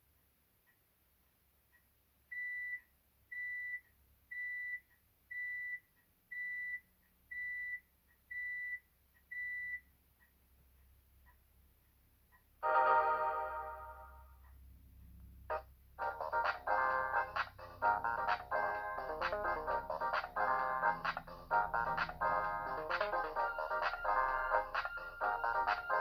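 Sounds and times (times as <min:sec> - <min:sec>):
phone beeping ringtone: 0:22.7 - 0:26.0.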